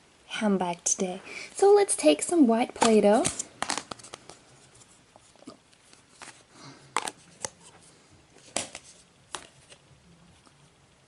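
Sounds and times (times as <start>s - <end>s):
soft clicks and rustles of dough: 2.8s - 10.7s.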